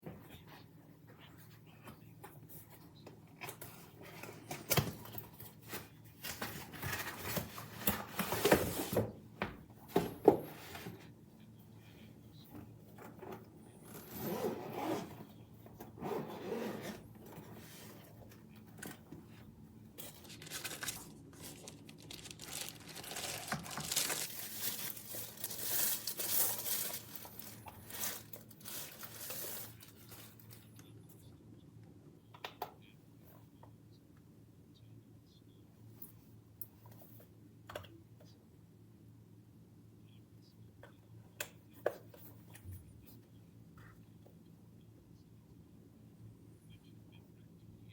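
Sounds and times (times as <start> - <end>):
rustling and scraping handling: 0.4 - 9.2, 9.8 - 30.9.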